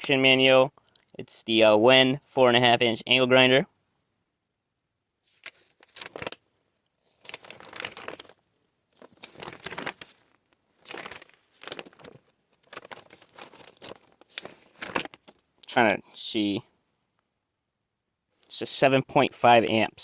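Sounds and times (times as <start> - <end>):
packaging crinkling: 5.3 - 6.4, 7.0 - 15.7.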